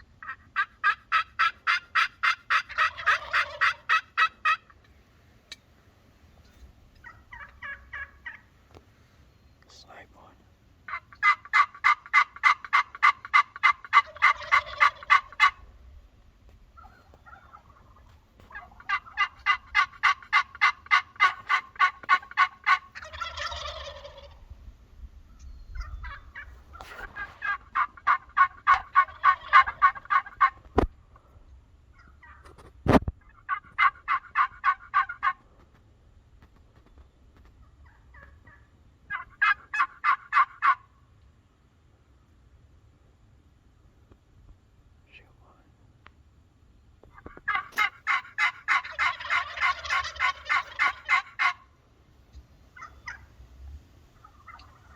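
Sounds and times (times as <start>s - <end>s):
turkey yelping: 0.2s - 4.9s, 6.9s - 8.6s, 10.9s - 15.7s, 16.7s - 24.4s, 25.7s - 30.8s, 31.9s - 32.5s, 33.2s - 35.4s, 37.8s - 41.0s, 47.1s - 53.3s, 54.2s - 54.9s.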